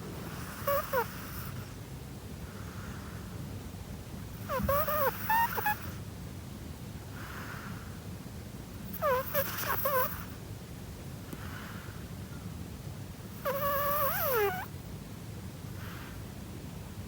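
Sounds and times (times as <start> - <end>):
dog breathing: 0.2 - 1.8, 4.4 - 6.0, 8.9 - 10.3, 13.4 - 14.7
dog snoring: 0.2 - 1.8, 4.3 - 6.0, 8.9 - 10.4, 13.3 - 14.7.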